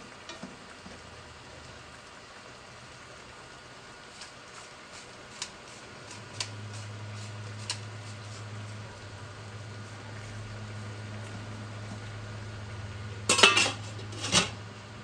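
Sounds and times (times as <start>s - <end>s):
appliance humming: 0.0s - 15.0s
kitchen utensils clicking: 13.3s - 14.6s.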